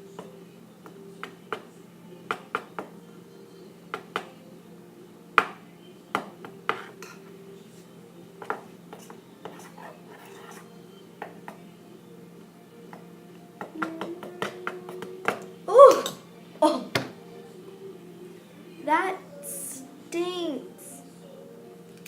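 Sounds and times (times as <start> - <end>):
utensil scraping mixing bowl: 8.5 - 10.7.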